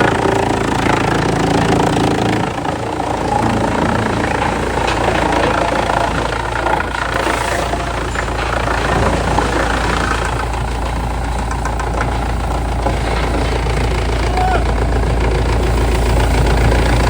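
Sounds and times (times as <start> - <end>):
heavy machine engine rumbling: 0.0 - 17.0.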